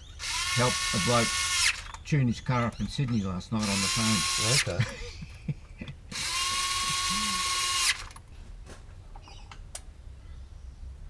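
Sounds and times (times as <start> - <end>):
power tool whining: 0.0 - 2.1, 3.6 - 4.8, 6.1 - 8.2.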